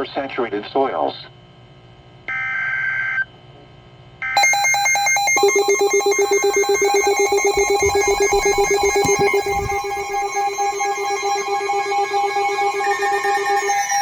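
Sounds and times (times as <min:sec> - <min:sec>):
pulsing buzzy electronic alert tone: 0:05.4 - 0:11.6.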